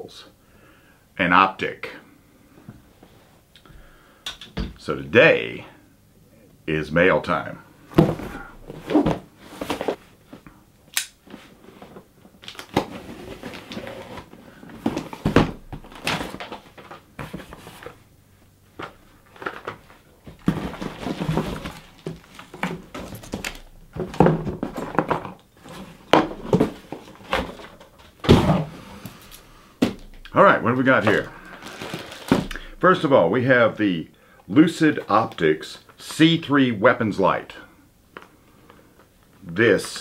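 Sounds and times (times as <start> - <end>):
knocks and thumps of handling: 7.9 - 10.5, 11.2 - 18.0, 18.7 - 30.3, 31.0 - 32.8
packaging rustling: 11.3 - 18.0, 18.8 - 30.2, 30.9 - 32.7.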